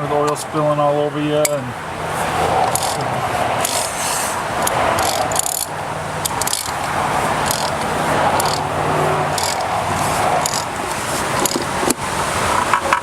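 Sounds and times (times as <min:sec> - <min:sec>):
plastic cap clicking and scraping: 0:09.4 - 0:12.0.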